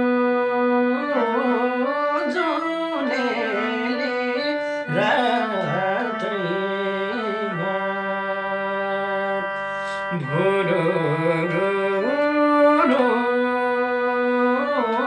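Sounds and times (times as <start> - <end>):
instrumental accompaniment: 0.0 - 15.0
man singing folk song: 1.5 - 15.0.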